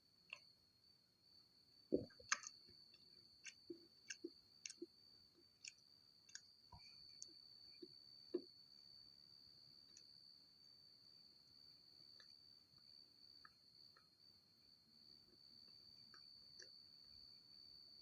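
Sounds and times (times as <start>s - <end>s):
mouth chewing clicks and smacks: 2.0s - 7.4s.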